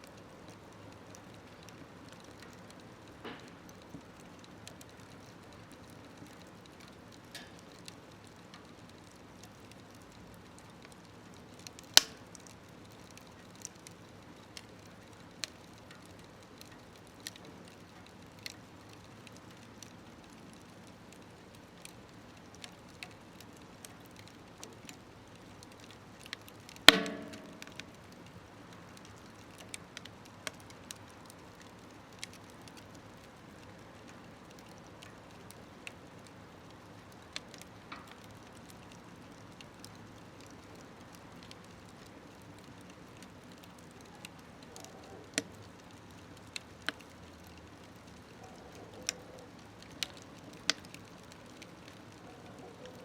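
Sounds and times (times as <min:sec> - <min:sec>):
wood fire crackling in stove: 0:00.0 - 0:53.0
loud sharp crack: 0:26.9 - 0:28.1.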